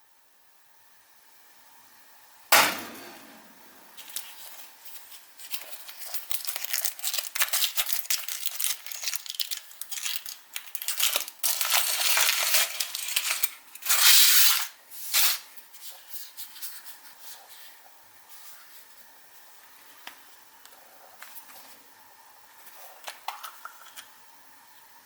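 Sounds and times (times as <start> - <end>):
foil wrapper crinkling and tearing: 4.0 - 15.5.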